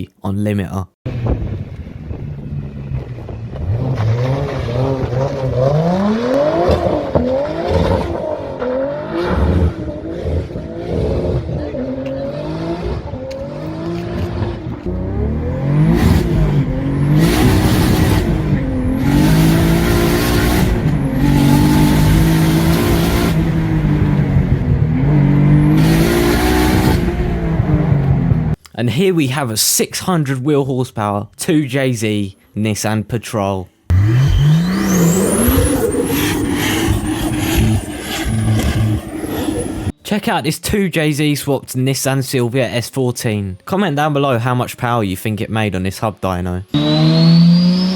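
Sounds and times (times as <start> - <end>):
turbocharged engine revving hard: 3.5 - 28.6, 33.9 - 40.0, 46.7 - 47.9.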